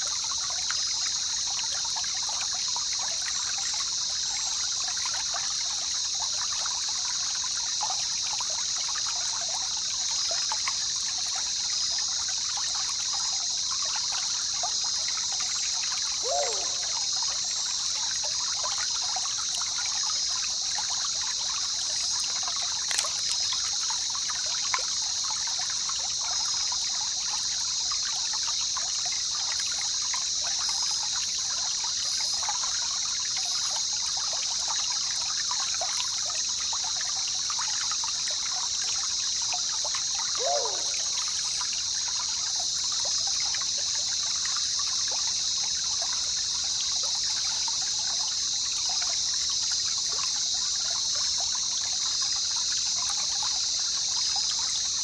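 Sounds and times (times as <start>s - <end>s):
river trickling and babbling: 0.0s - 55.0s
short falling call: 16.2s - 17.0s.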